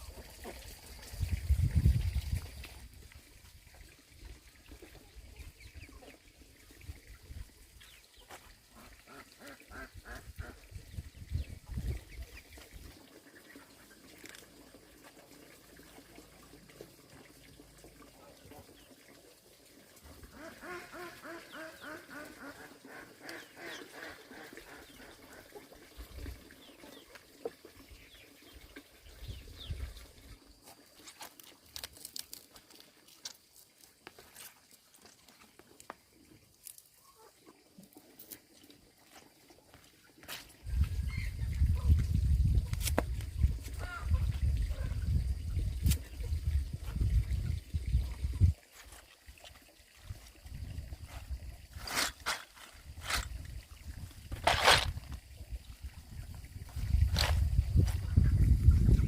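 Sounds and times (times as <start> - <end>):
ducks quacking: 8.7 - 10.6, 20.3 - 25.8, 43.7 - 45.0.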